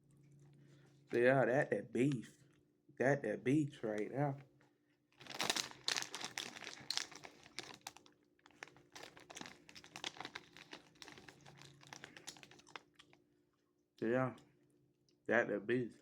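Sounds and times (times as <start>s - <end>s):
chip bag crinkling: 5.2s - 13.2s.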